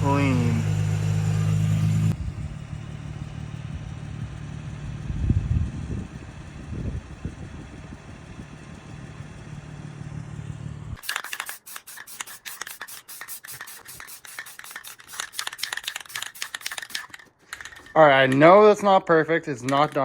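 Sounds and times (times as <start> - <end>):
car engine idling: 0.0 - 11.0
light clicks and scrapes: 11.1 - 19.0.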